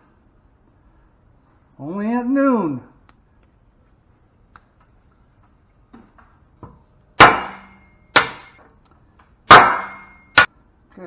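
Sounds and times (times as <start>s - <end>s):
hammer blows with metallic ring: 7.2s - 8.6s, 9.5s - 10.5s.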